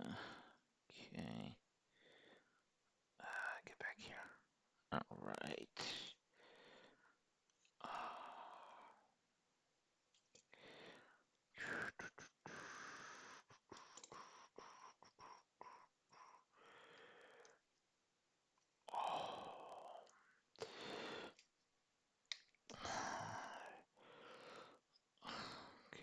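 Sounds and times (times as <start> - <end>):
breathy sighs: 7.8 - 9.0, 18.9 - 21.4, 22.7 - 26.0.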